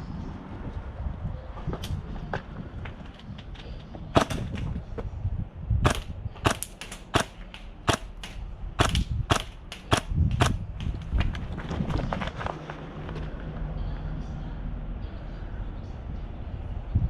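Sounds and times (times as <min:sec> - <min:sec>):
airsoft gun shots: 0:04.2 - 0:04.7, 0:05.8 - 0:10.6.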